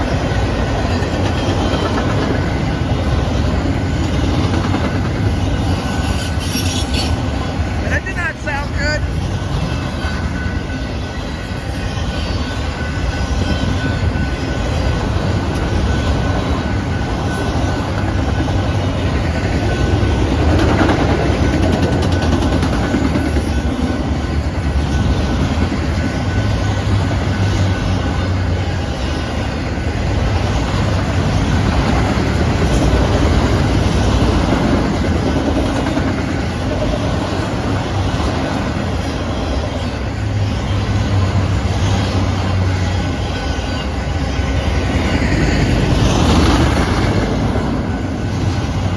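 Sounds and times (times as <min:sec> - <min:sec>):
train wheels clattering on rails: 0:00.0 - 0:07.8, 0:09.0 - 0:48.9
faint thin squeal: 0:05.7 - 0:07.2.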